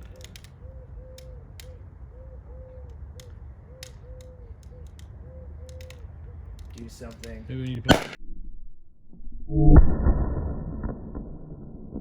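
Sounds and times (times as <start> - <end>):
sharp clicks and ticks: 0.0 - 1.9, 2.8 - 8.2
low outdoor rumble: 0.0 - 12.0.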